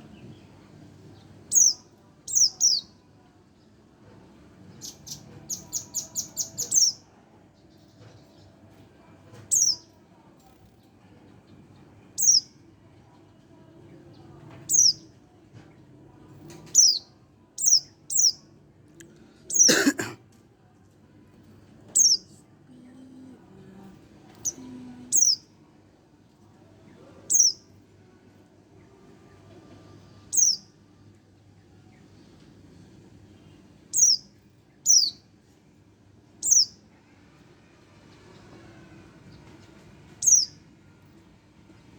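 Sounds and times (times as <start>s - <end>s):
louder low bird sound: 24.4s - 25.4s, 27.3s - 27.6s.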